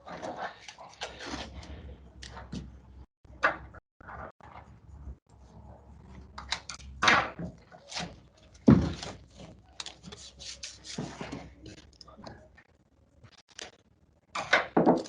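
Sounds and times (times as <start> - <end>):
hard parts knocking and thudding: 8.5 - 9.6, 14.4 - 15.0.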